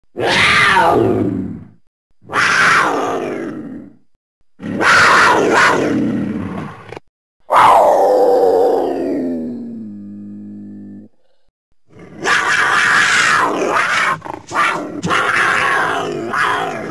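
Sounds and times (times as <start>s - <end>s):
raspy creature calls: 12.2s - 16.9s.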